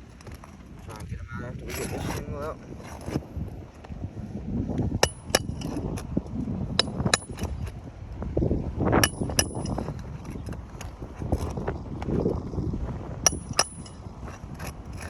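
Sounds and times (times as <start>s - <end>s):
wind rumble on microphone: 0.0s - 15.0s
hammer and bar tapping nails: 9.0s - 9.8s.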